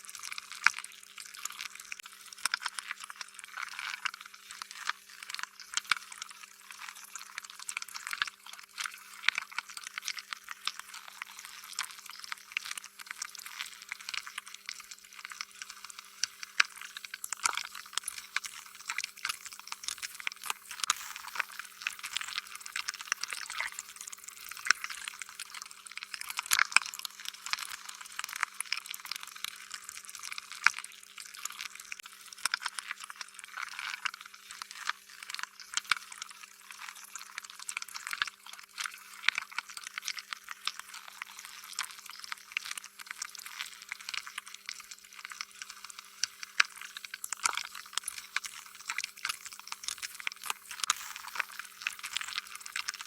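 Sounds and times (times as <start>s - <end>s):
faint steady hum: 11.2s - 26.1s, 44.0s - 53.0s
slime squelching and popping: 11.7s - 27.7s, 41.8s - 53.0s.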